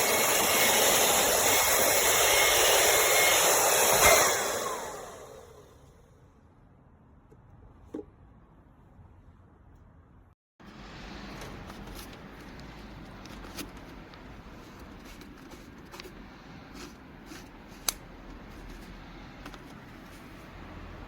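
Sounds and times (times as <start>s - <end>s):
handling clicks and rustles: 11.1s - 20.6s.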